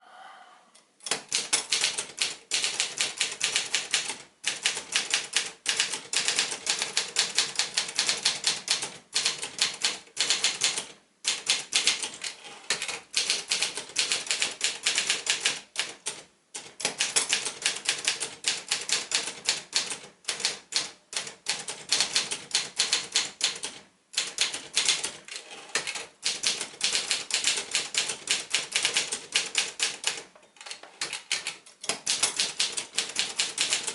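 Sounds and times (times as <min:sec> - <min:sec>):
typewriter keys typing quickly: 0:01.0 - 0:33.9.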